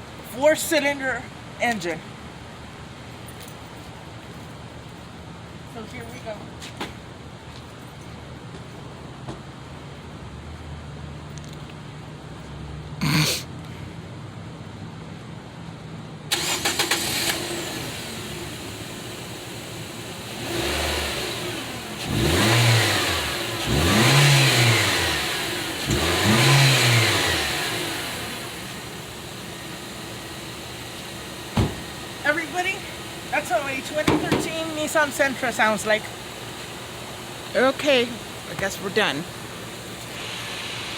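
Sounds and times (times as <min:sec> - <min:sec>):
car engine starting and revving: 0:16.3 - 0:40.9.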